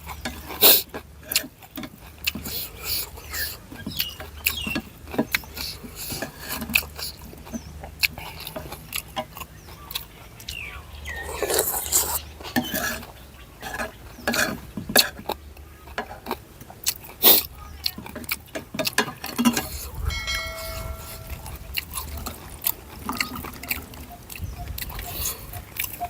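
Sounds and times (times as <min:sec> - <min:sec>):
utensils clinking against bowl: 0:10.5 - 0:15.3, 0:17.3 - 0:26.0.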